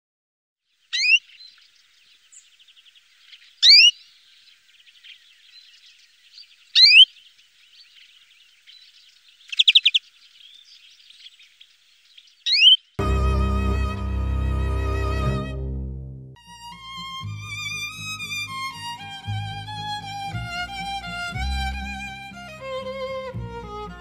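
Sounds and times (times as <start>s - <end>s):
faint bird twittering: 0.7s - 13.0s
rapid buzzy bird trill: 1.0s - 1.4s, 3.6s - 4.1s, 6.8s - 7.3s, 9.4s - 10.2s, 12.5s - 12.9s
songbird rising whistled call: 1.0s - 1.5s, 3.6s - 4.0s, 6.8s - 7.1s, 12.5s - 12.8s.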